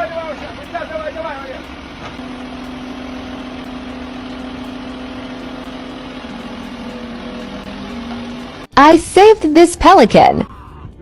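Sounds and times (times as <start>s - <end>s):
engine idling: 0.0s - 8.8s.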